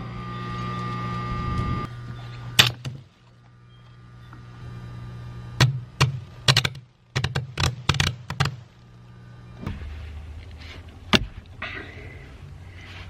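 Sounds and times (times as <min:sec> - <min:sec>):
electrical hum: 0:00.0 - 0:13.0
sharp electrical snaps: 0:05.5 - 0:09.0.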